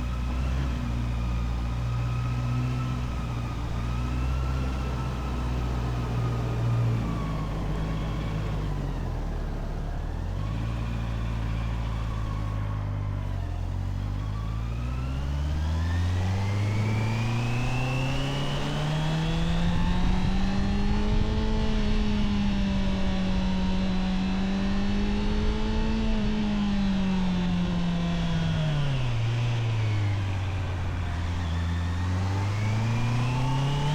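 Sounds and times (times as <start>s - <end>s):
motorcycle engine revving: 13.6s - 33.9s.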